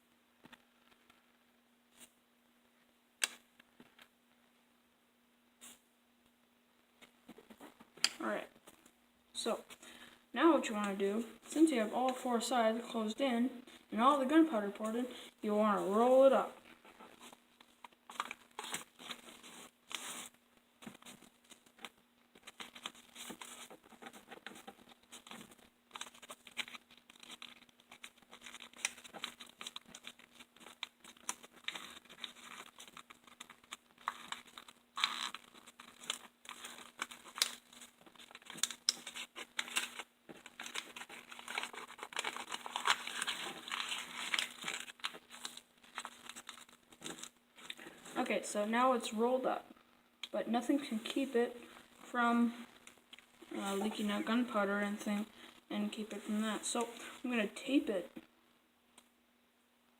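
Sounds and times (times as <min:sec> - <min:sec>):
paper rustling and crinkling: 0:16.0 - 0:48.2, 0:50.9 - 0:54.5.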